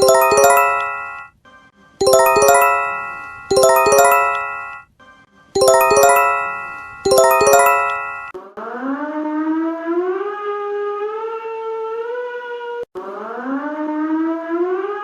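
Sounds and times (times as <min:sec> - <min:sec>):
bell-like alert chime: 0:00.0 - 0:01.3, 0:02.0 - 0:04.8, 0:05.6 - 0:08.3.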